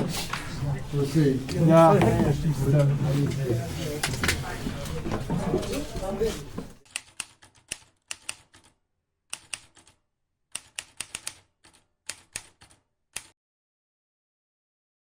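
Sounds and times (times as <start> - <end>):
typewriter keystroke clicks: 6.8 - 13.3.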